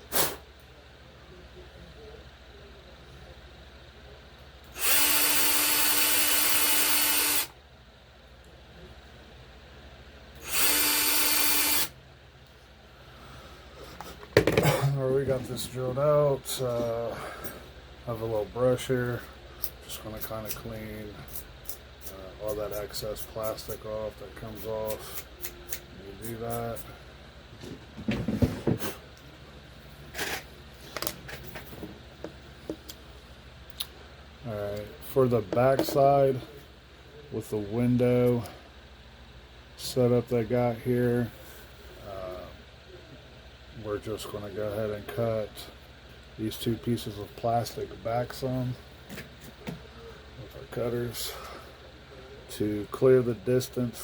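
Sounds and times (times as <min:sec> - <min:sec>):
power drill running: 0:04.7 - 0:07.5, 0:10.4 - 0:12.0.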